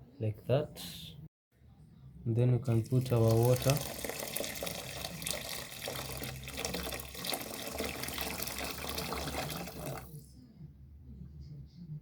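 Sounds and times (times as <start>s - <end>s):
hot water pouring into pot: 2.7s - 10.2s.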